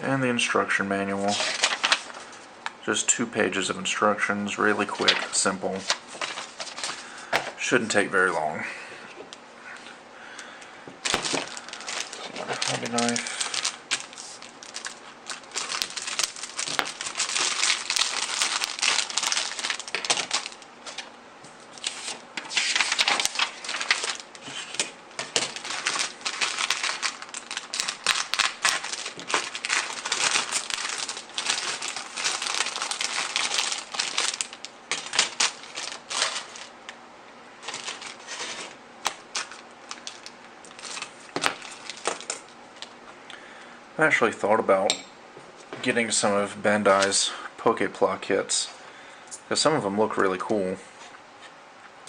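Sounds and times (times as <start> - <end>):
plastic packaging crinkling: 1.2 - 2.4, 4.7 - 7.4, 11.0 - 36.8, 37.6 - 43.0.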